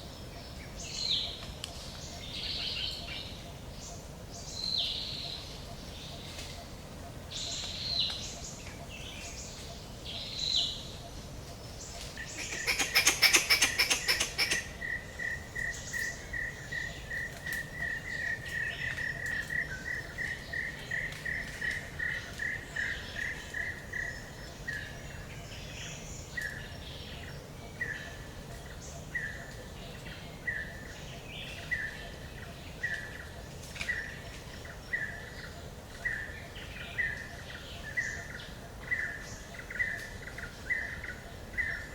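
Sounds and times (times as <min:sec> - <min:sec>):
birds calling: 0:00.3 - 0:41.9
bird rapid rattling call: 0:12.2 - 0:14.7.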